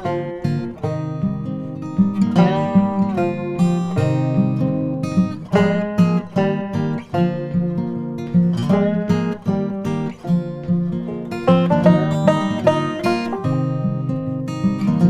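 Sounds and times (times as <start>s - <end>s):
acoustic guitar country music: 0.0s - 15.0s.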